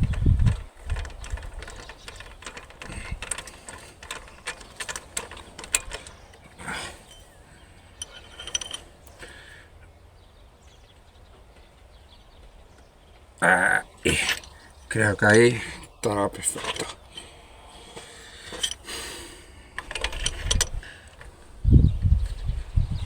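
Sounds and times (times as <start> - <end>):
ratchet wrench clicking: 0.0 - 6.2, 8.0 - 8.8, 18.5 - 18.9, 19.8 - 21.3.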